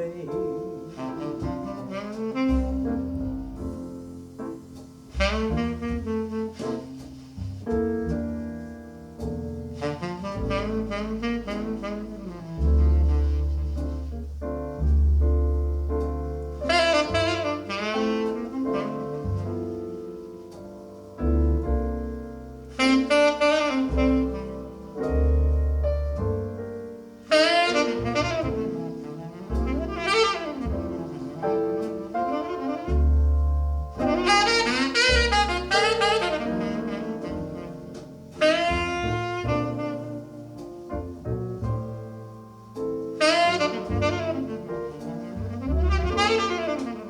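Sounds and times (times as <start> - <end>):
deep bass notes: 0.0 - 47.0
soft piano: 0.0 - 47.0
saxophone melody: 0.9 - 3.8, 5.2 - 7.3, 9.8 - 14.2, 16.6 - 20.1, 22.7 - 25.4, 27.3 - 41.2, 43.2 - 47.0.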